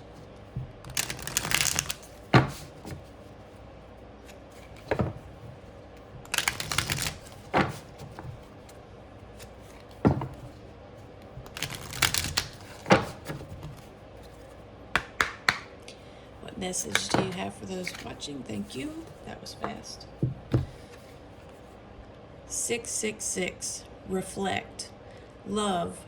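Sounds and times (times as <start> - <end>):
cards riffling: 0.0 - 3.1, 6.2 - 8.6, 11.4 - 14.5
card taps and snaps: 15.0 - 15.7.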